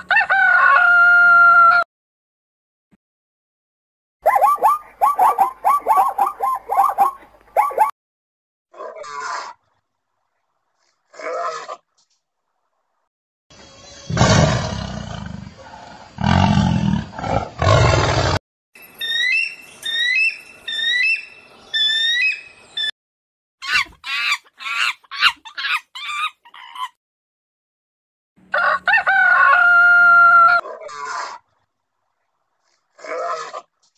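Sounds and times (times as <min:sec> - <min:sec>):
deep animal roars: 0:14.1 - 0:18.4.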